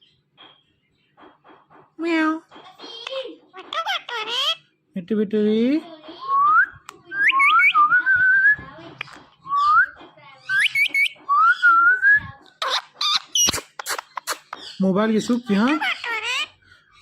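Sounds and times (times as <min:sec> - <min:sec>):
parrot whistling: 0:06.3 - 0:08.6, 0:09.5 - 0:14.5.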